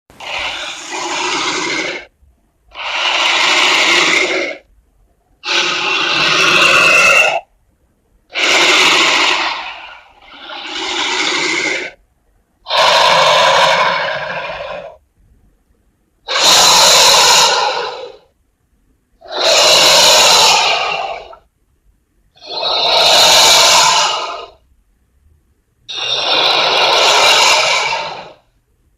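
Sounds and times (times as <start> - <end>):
long rough creature calls: 0.1 - 4.7, 5.4 - 7.5, 8.3 - 12.0, 12.6 - 15.0, 16.2 - 18.3, 19.2 - 21.5, 22.4 - 24.6, 25.9 - 28.5.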